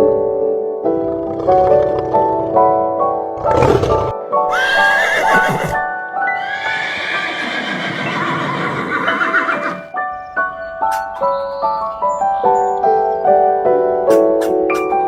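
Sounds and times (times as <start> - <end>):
soft background music: 0.0 - 15.0
horse whinnying: 3.4 - 9.9.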